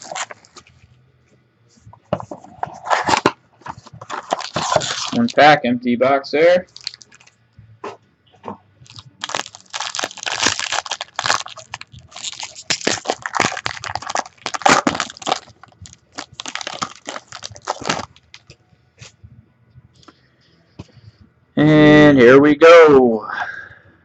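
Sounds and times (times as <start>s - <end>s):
wrapper tearing and crinkling: 0.0s - 0.8s, 4.1s - 5.4s, 6.7s - 7.3s, 8.9s - 18.5s.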